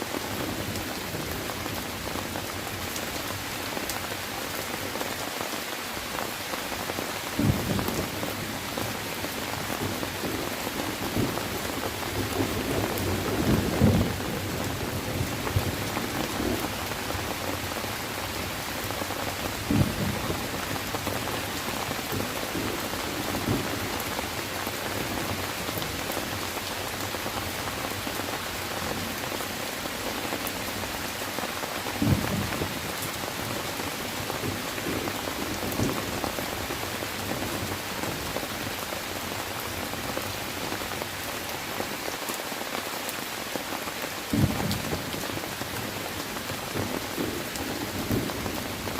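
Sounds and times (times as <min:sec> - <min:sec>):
steady rain hiss: 0:00.0 - 0:48.9.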